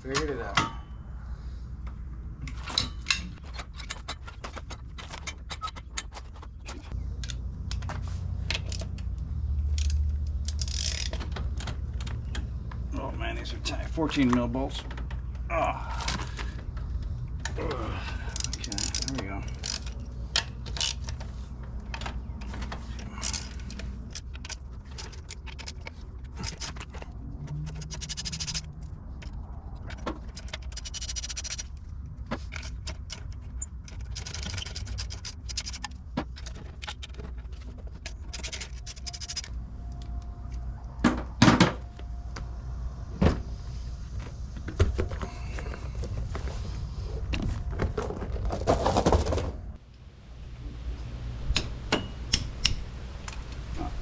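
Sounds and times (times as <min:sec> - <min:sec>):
metal tools and bolts clinking: 0:00.0 - 0:01.0, 0:02.4 - 0:12.8, 0:18.2 - 0:31.8, 0:32.4 - 0:42.1.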